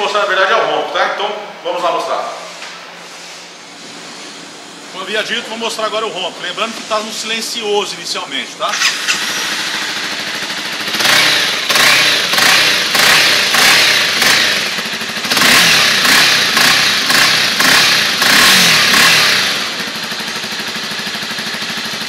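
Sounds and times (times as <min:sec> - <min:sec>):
motorcycle engine revving: 0:08.6 - 0:22.0.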